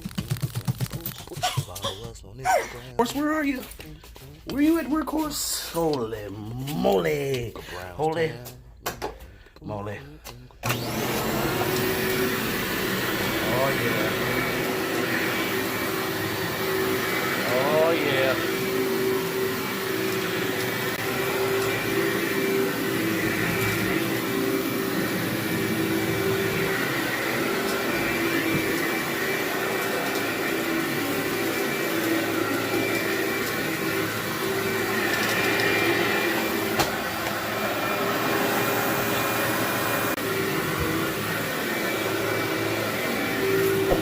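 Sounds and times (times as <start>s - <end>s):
vacuum cleaner on carpet: 10.6s - 44.0s.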